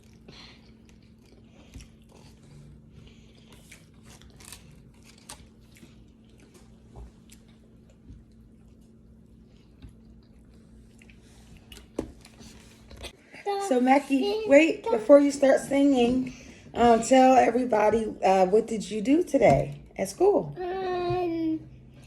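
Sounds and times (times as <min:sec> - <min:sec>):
person chewing food: 0:00.0 - 0:13.2.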